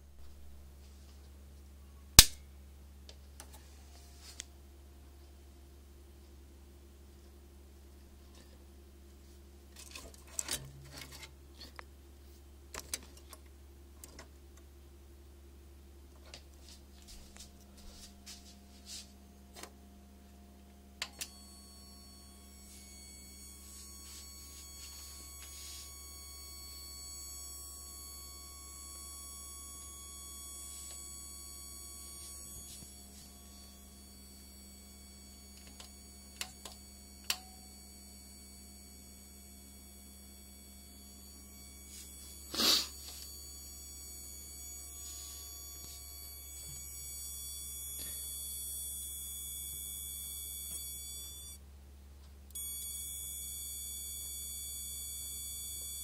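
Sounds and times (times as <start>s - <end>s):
high-pitched electrical whine: 16.6s - 51.6s, 52.5s - 56.0s.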